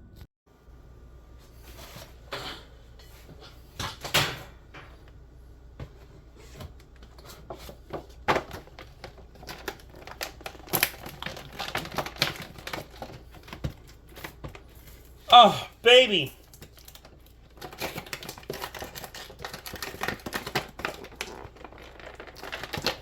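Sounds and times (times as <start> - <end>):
cardboard and plastic packaging rustling: 6.4 - 14.9, 16.7 - 23.0.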